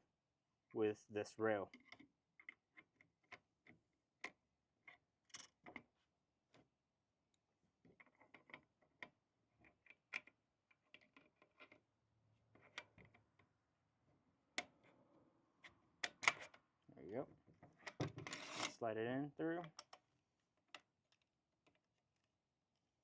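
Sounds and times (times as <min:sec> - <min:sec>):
gun parts clicking and scraping: 0:17.7 - 0:18.8.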